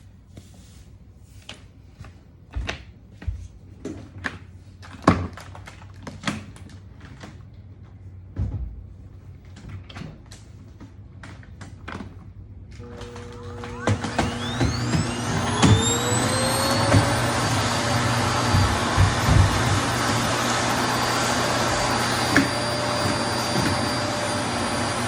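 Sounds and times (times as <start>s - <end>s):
low hum: 12.8s - 25.0s.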